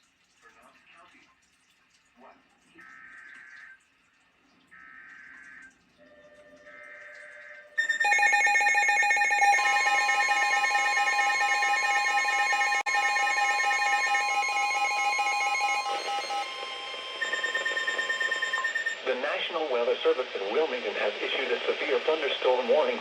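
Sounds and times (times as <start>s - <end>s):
warbling alert alarm: 6.1s - 19.3s
paired beeping tones: 7.8s - 19.1s.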